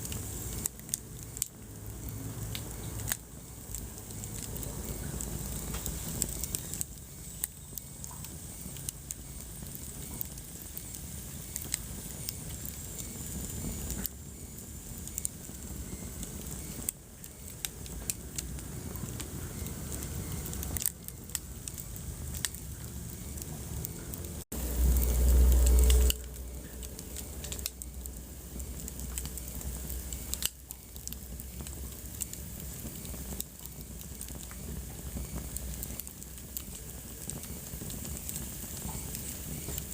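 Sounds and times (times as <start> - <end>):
steady hiss: 0.0 - 39.9
wood fire crackling and popping: 0.0 - 39.9
loud low rumble: 22.0 - 28.9.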